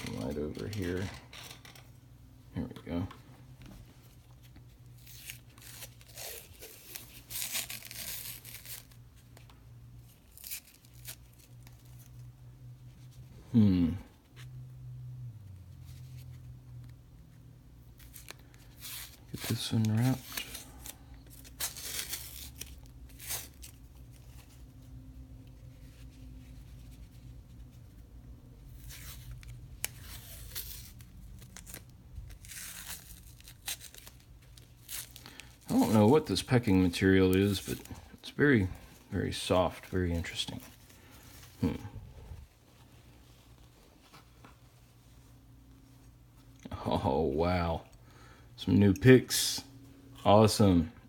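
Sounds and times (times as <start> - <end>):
faint low hum: 0.0 - 51.0
packing material tearing and crinkling: 4.9 - 9.0, 10.0 - 12.2, 18.0 - 24.6, 28.7 - 41.9.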